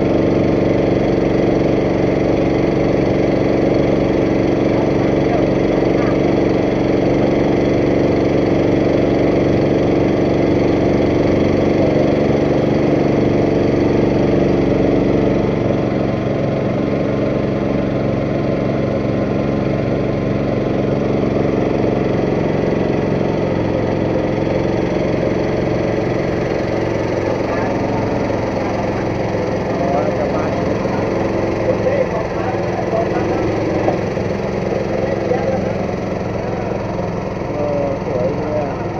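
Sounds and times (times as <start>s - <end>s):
boat engine running: 0.0s - 38.9s.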